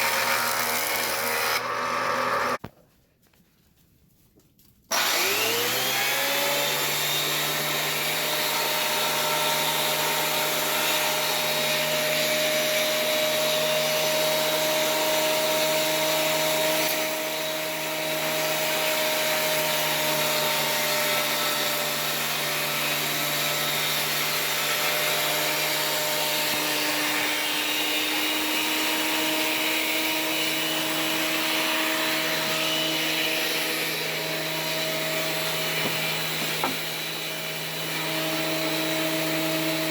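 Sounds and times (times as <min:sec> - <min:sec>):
sander motor hum: 0:04.9 - 0:16.0, 0:19.2 - 0:39.9.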